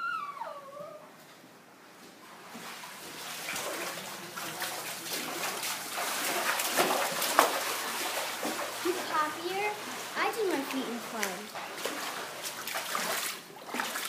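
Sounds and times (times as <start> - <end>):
water splashing and running: 2.2 - 14.0
water drips: 3.0 - 14.0.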